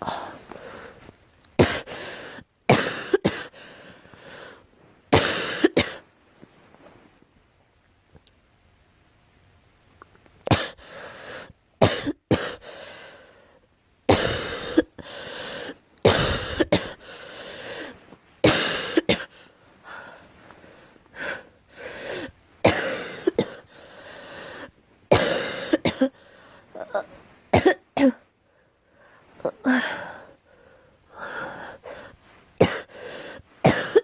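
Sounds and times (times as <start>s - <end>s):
girl coughing: 1.6s - 1.9s, 2.7s - 3.5s, 5.1s - 6.0s, 11.8s - 12.6s, 14.1s - 15.0s, 16.1s - 17.0s, 18.4s - 19.3s, 22.6s - 23.7s, 25.1s - 26.2s, 26.8s - 28.2s, 32.6s - 33.0s, 33.6s - 34.0s.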